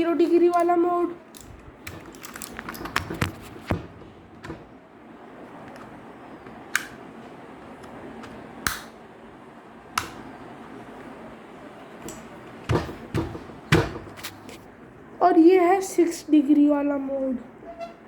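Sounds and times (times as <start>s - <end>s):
keyboard plastic clicks and knocks: 1.4s - 4.7s.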